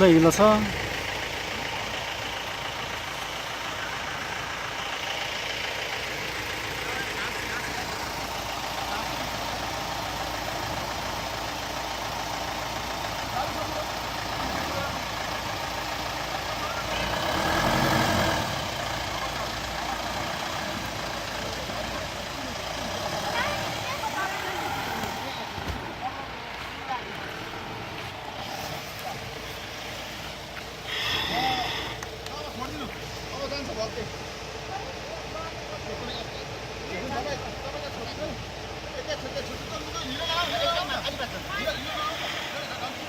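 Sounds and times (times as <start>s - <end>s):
road noise: 0.0s - 43.0s
vehicle engine running: 0.0s - 43.0s.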